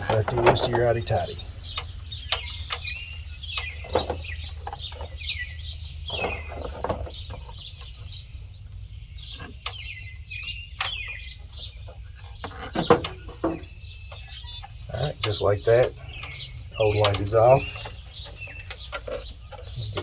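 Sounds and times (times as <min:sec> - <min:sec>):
sharp clicks and knocks: 0:00.0 - 0:05.3, 0:10.8 - 0:14.3, 0:14.9 - 0:20.0
birds chirping: 0:00.0 - 0:20.0.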